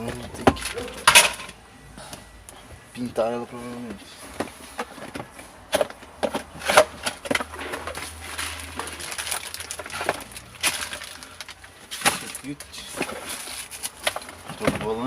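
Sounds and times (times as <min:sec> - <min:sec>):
plastic parts rustling and clicking: 0:04.3 - 0:15.0.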